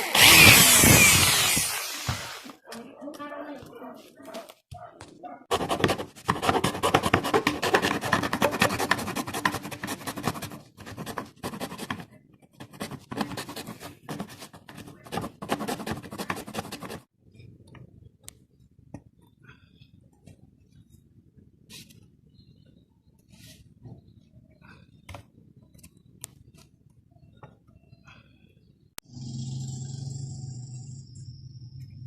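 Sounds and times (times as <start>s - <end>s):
scratching and rubbing with crackles: 5.5s - 17.1s.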